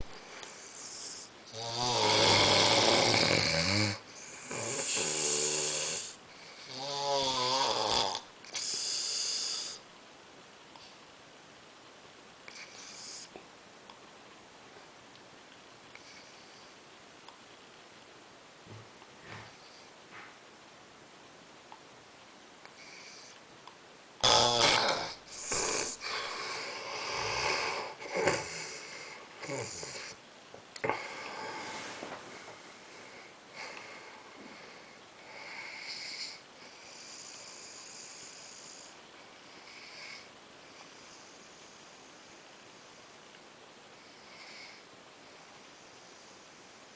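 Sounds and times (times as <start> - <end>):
man snoring loudly: 0.6 - 9.8, 24.2 - 28.8, 29.4 - 30.1.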